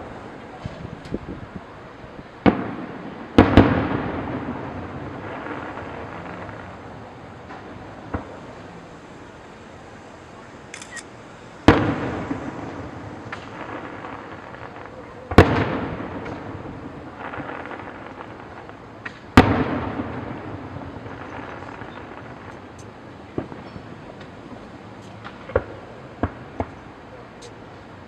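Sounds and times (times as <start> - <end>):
fireworks booming: 0.0 - 28.0
small firework pops: 0.5 - 1.3, 7.4 - 8.6, 11.6 - 27.6.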